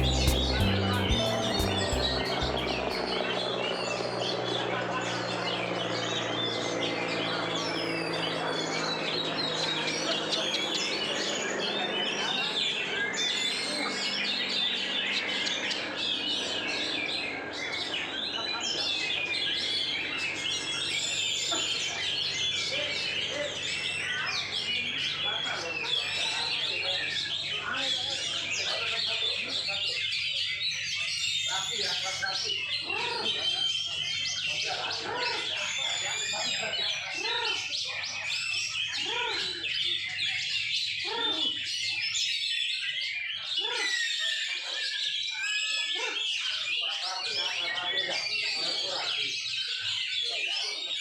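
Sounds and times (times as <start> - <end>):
low rising and falling bird notes: 0.0 - 6.4
birds singing fast chirps and trills: 0.0 - 51.0.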